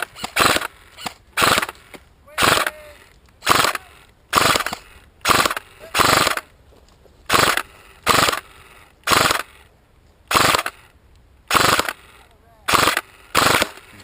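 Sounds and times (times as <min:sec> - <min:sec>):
airsoft gun rapid-fire bursts: 0:00.0 - 0:00.8, 0:01.4 - 0:01.8, 0:02.4 - 0:02.8, 0:03.4 - 0:06.5, 0:07.3 - 0:09.6, 0:10.3 - 0:10.9, 0:11.5 - 0:13.9.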